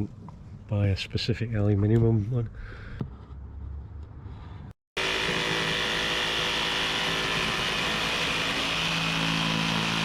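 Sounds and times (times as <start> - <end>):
jigsaw cutting metal panel: 5.0 - 10.0.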